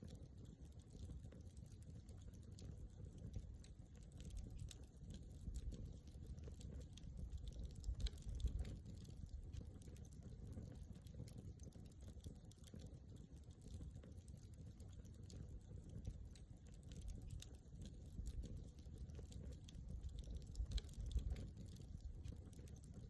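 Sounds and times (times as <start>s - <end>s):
campfire crackling and popping: 0.0s - 23.0s
low rumble of flame: 0.0s - 23.0s.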